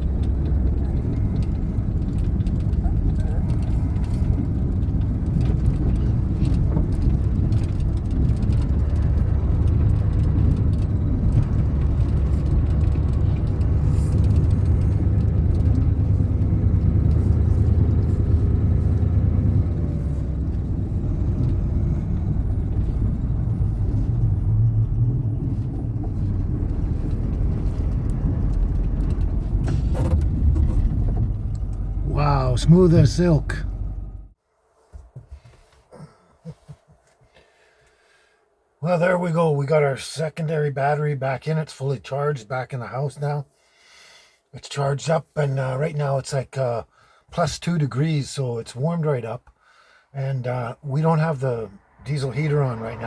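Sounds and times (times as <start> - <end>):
vehicle driving through snow: 0.0 - 34.4.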